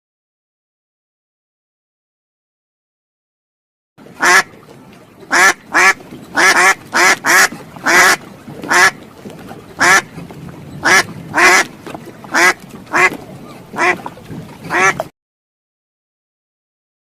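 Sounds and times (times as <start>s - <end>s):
duck quacking: 4.2s - 4.5s, 5.3s - 9.0s, 9.8s - 10.1s, 10.8s - 11.7s, 12.3s - 15.1s.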